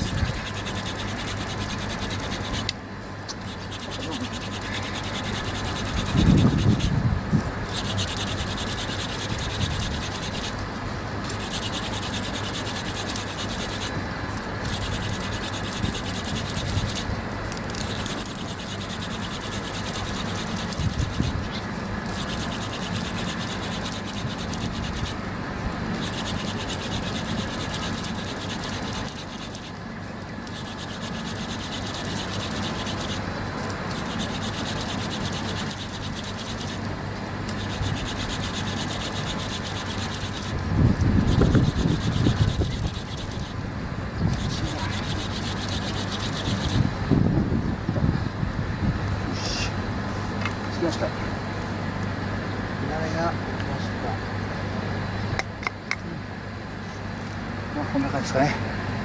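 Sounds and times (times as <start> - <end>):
wooden spindle grinding on board: 0.0 - 25.2, 25.8 - 29.8, 30.4 - 47.0.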